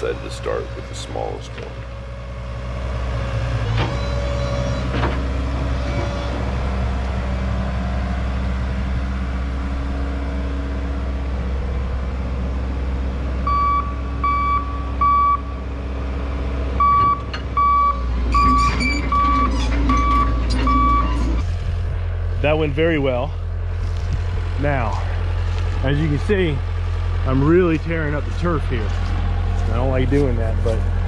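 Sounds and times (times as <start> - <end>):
heavy equipment engine running: 0.0 - 31.0
reversing alarm beeping: 3.8 - 5.0, 13.4 - 15.5, 16.8 - 21.4.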